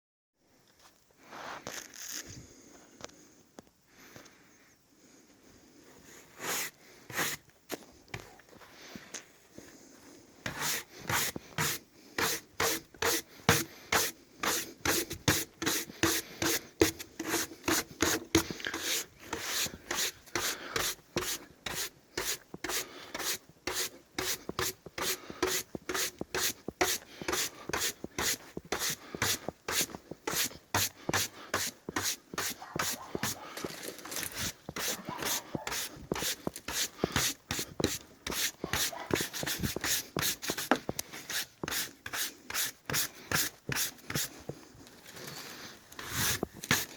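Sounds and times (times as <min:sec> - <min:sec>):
brush scrubbing wooden board: 0:06.4 - 0:07.4, 0:10.5 - 0:33.5, 0:34.6 - 0:44.6, 0:46.1 - 0:46.9.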